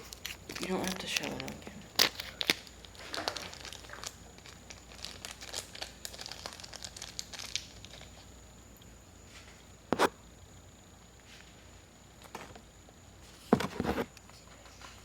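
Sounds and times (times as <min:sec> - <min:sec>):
plastic packaging crinkling: 0:00.0 - 0:08.3.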